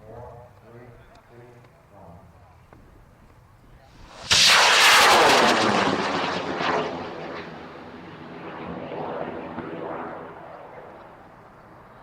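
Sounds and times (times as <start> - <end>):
rocket motor roar: 4.1 - 9.6.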